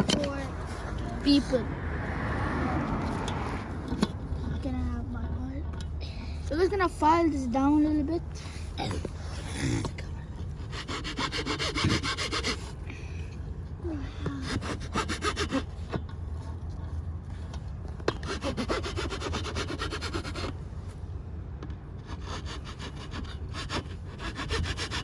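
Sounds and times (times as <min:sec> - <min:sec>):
hand file rasping on metal: 0:10.5 - 0:12.8, 0:14.2 - 0:16.0, 0:18.1 - 0:20.6, 0:22.0 - 0:25.0.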